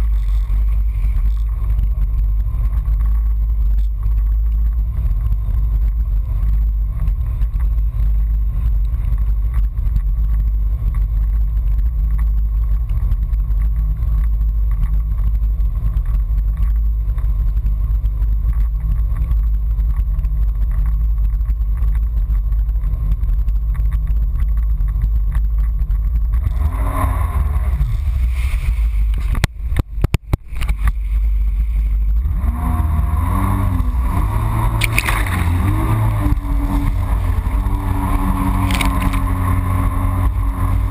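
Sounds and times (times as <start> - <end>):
jet ski engine rumbling: 0.0 - 40.9
water rushing: 33.0 - 40.9.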